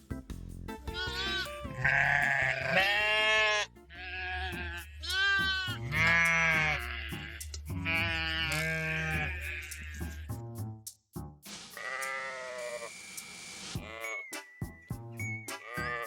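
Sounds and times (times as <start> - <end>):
farm animal bleating: 0.9 - 10.3, 11.8 - 12.9, 13.8 - 14.3, 15.5 - 16.0.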